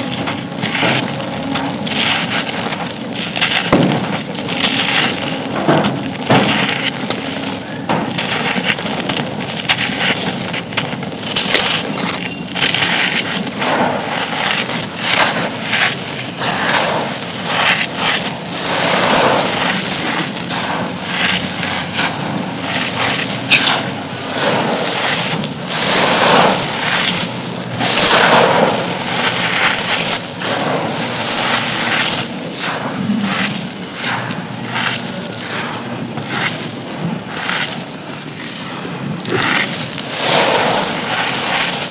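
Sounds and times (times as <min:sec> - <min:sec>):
concrete crumbling and crunching: 0:00.0 - 0:41.9.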